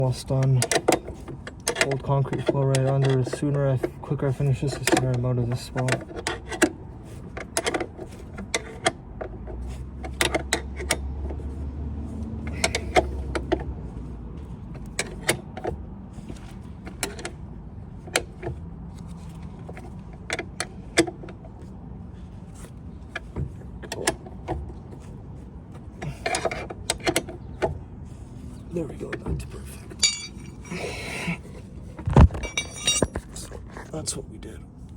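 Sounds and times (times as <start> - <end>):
tools and metal parts clinking: 29.8 - 30.9, 32.2 - 33.5.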